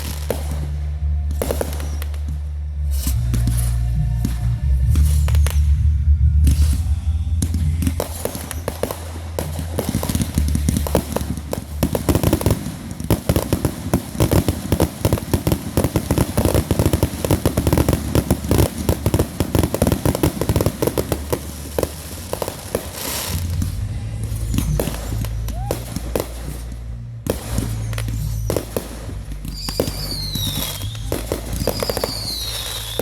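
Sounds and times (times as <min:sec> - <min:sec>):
fireworks crackling: 0:00.0 - 0:33.0.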